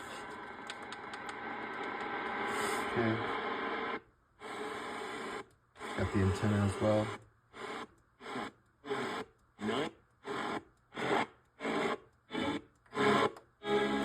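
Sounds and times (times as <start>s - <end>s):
snatches of radio stations: 0.0s - 13.3s
radio static bursts: 1.4s - 12.0s.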